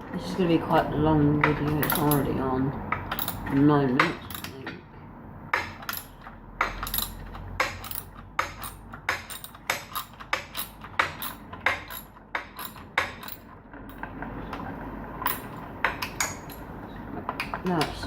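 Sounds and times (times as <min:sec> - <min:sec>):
hand tools clinking on metal: 0:01.5 - 0:02.4.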